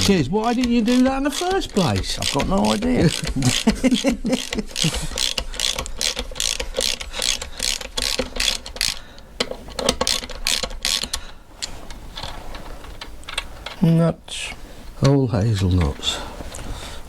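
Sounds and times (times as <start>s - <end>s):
socket ratchet clicking: 0.0s - 11.8s.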